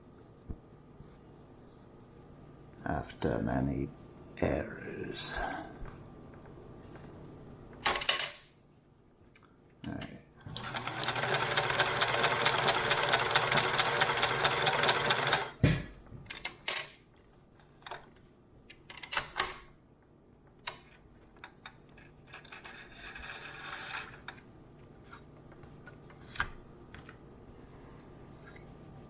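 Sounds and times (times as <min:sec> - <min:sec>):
sewing machine stitching: 0:10.5 - 0:15.6
sewing machine thump: 0:15.6 - 0:16.0.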